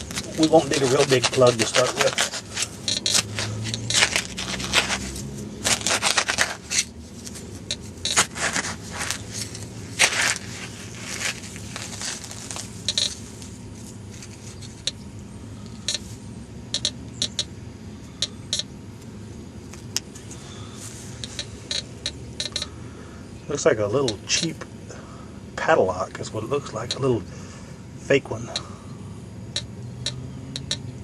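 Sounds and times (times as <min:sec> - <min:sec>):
digging tool scraping soil: 0:00.0 - 0:13.2.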